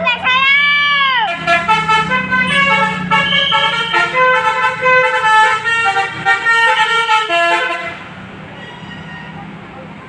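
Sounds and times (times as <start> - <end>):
musical bus horn melody: 1.3 - 8.1.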